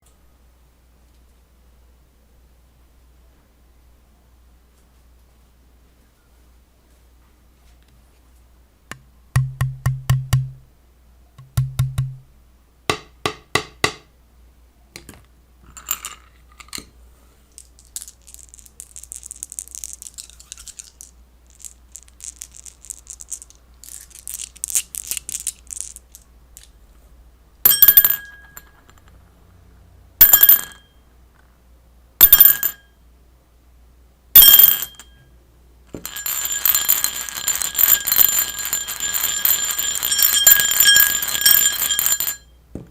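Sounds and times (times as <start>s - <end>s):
busy ringing: 27.7s - 29.0s, 34.4s - 35.3s, 36.0s - 42.6s.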